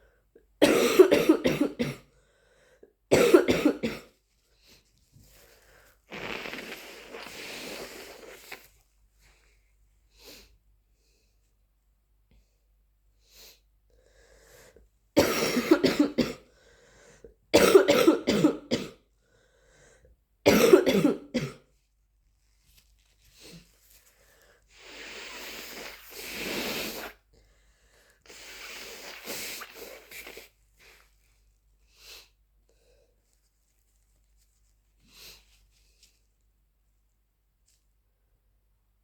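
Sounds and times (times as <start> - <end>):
person coughing: 0.6 - 2.1, 3.1 - 4.1, 15.2 - 16.4, 17.6 - 19.0, 20.5 - 21.7
nose blowing: 6.1 - 8.7, 24.8 - 27.2, 28.3 - 30.5.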